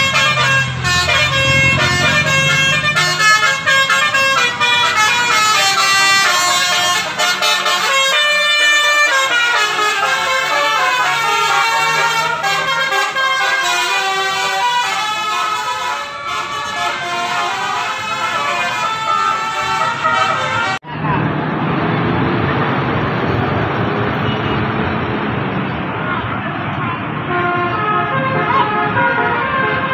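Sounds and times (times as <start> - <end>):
multi-tone musical horns: 0.0 - 20.8, 27.2 - 29.9.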